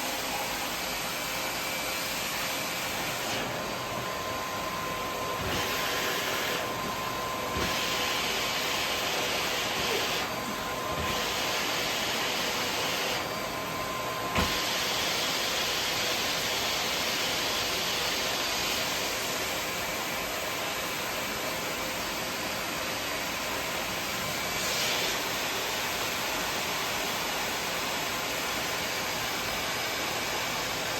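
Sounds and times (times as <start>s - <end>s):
vacuum cleaner running: 0.0s - 30.9s.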